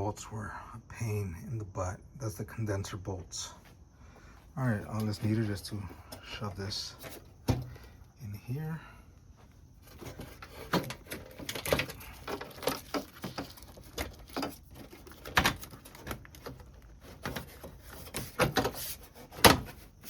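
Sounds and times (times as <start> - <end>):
plastic and metal parts knocking: 9.8 - 19.9.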